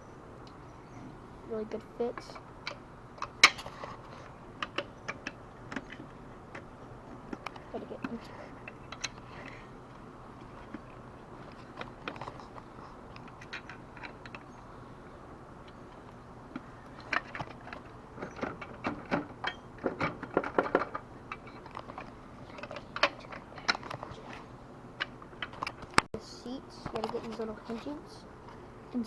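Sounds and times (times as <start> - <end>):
parts clicking and rattling: 2.1 - 14.7, 15.6 - 24.3, 25.0 - 26.1.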